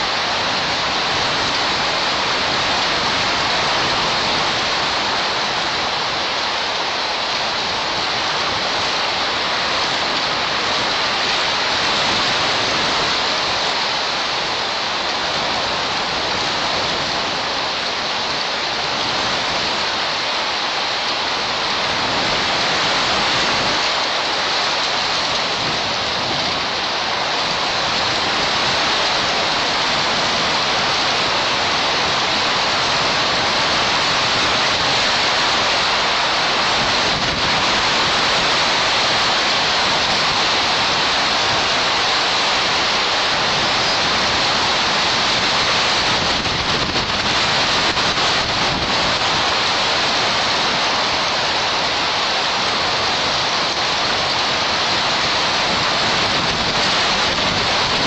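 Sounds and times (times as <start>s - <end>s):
steady rushing hiss: 0.0s - 58.0s.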